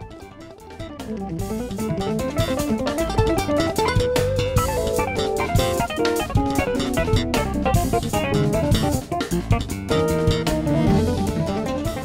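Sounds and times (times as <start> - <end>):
band playing steady beat: 0.0 - 12.0.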